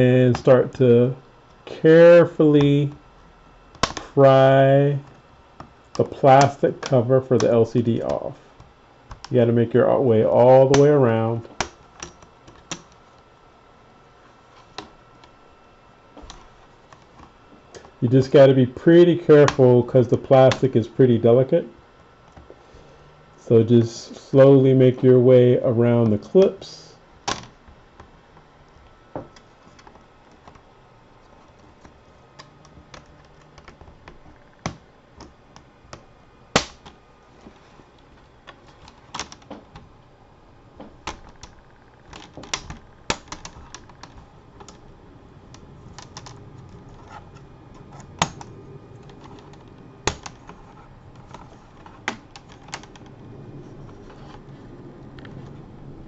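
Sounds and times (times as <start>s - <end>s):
plastic clips snapping loose: 41.0s - 44.8s, 48.0s - 50.6s.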